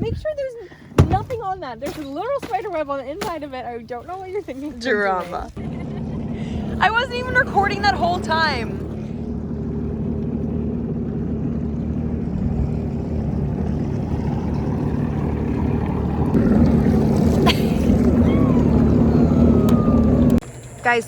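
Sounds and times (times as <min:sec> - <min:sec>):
jet ski engine drone: 0:05.6 - 0:21.0.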